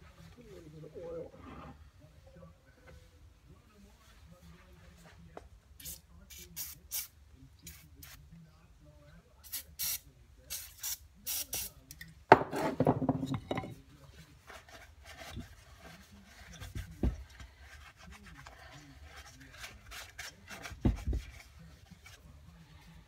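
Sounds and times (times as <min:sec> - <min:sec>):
rubbing and wiping metal: 0:14.0 - 0:23.0.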